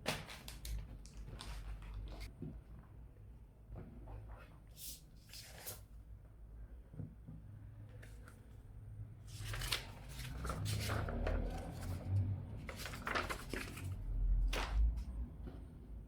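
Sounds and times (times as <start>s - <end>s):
packaging rustling: 12.7s - 14.0s.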